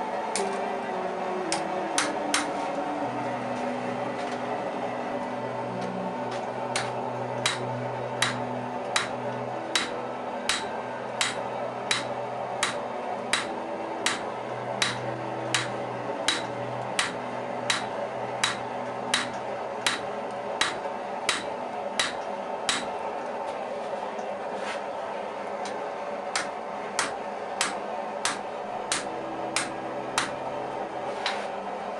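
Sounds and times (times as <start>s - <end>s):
hammer striking steel on anvil: 1.5s - 2.5s, 6.7s - 22.9s, 26.4s - 30.4s.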